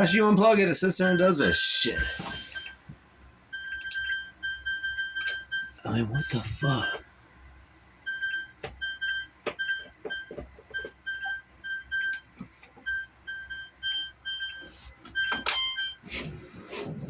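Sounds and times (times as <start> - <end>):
washing machine short high beeps: 1.1 - 2.8, 12.9 - 16.0.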